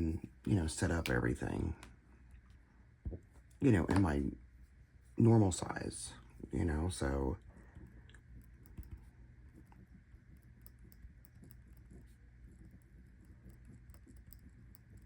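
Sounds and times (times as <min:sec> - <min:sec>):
low room hum: 0:00.0 - 0:15.0
pen and paper ticks on desk: 0:08.1 - 0:15.0.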